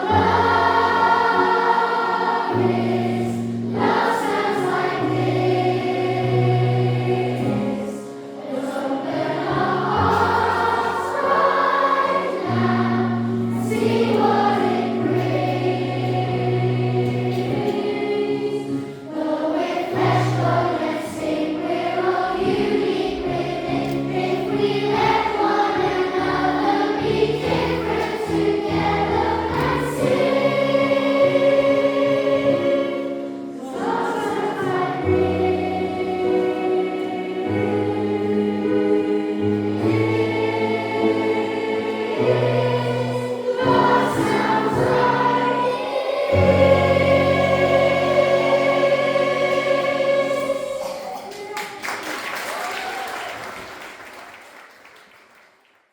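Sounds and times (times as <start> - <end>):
children's choir singing: 0.0 - 53.8.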